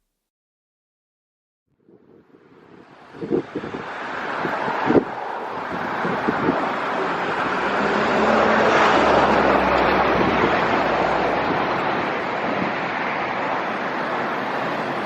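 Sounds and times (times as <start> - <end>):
wind buffeting microphone: 1.8 - 15.0
jet plane passing: 3.2 - 15.0.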